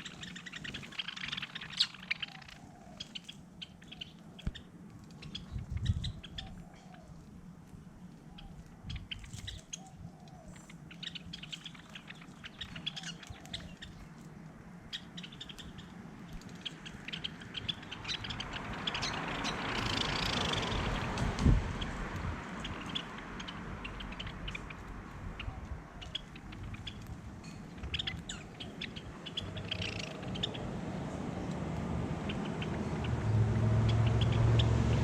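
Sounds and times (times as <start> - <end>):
small birds chirping: 0.0 - 35.0
lower bird call: 16.6 - 35.0.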